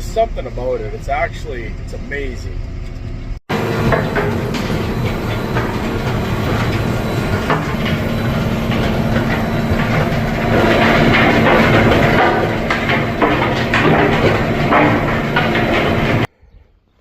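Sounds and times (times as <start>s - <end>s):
engine humming: 0.0s - 16.3s
rattling and clattering: 2.8s - 16.3s.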